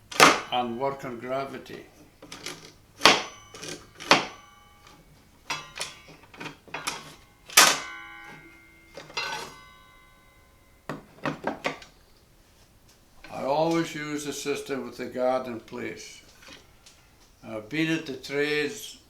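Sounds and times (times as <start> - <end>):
plexiglass guard pieces clacking: 0.0 - 9.9, 10.9 - 12.3, 15.5 - 17.4.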